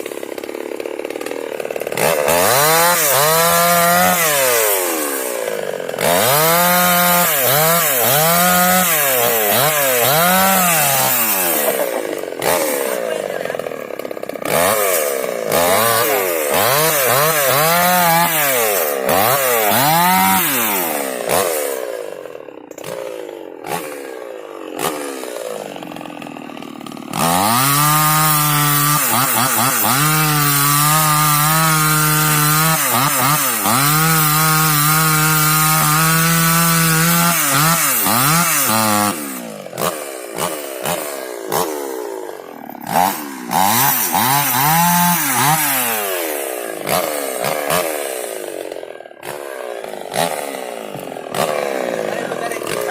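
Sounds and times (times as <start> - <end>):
chainsaw revving and cutting wood: 0.0 - 52.9.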